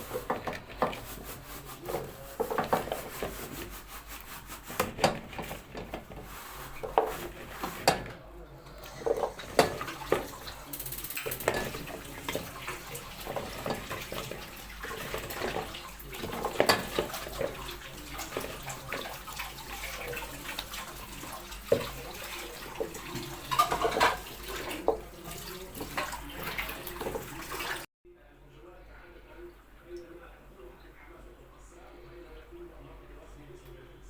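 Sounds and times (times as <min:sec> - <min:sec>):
dishes clattering: 0:00.0 - 0:03.7, 0:04.6 - 0:27.9
tap water running into sink: 0:00.0 - 0:27.9.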